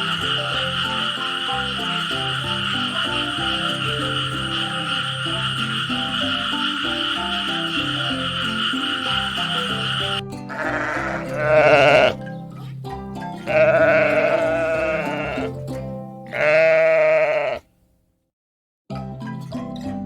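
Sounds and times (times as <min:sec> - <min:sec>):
wavering animal calls: 0:00.0 - 0:12.2, 0:13.4 - 0:15.6, 0:16.3 - 0:17.6
background music: 0:00.0 - 0:17.0, 0:18.9 - 0:20.0.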